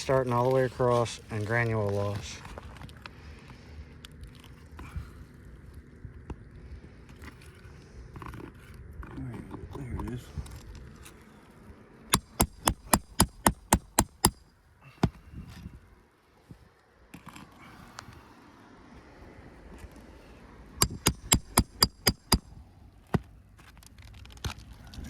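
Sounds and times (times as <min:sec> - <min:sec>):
hammer tapping on shingles: 0:12.1 - 0:14.4, 0:20.8 - 0:22.5.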